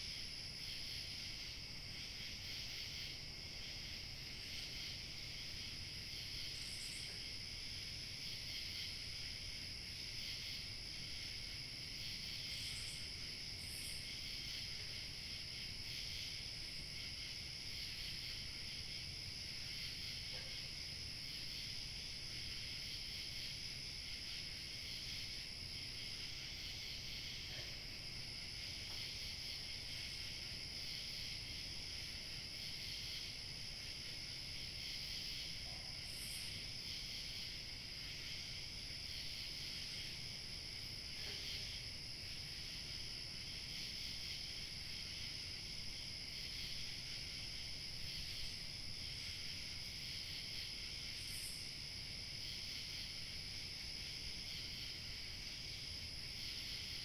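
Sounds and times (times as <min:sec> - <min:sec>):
crickets chirping: 0:00.0 - 0:57.0.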